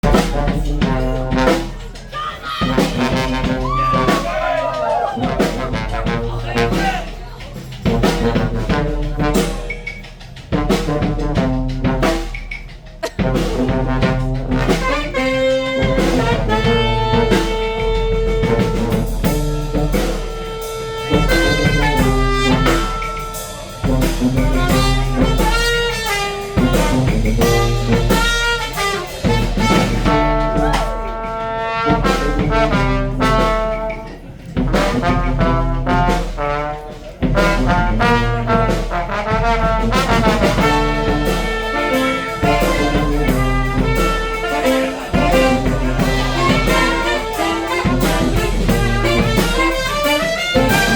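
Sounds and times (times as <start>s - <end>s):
brass band playing: 0.0s - 50.9s.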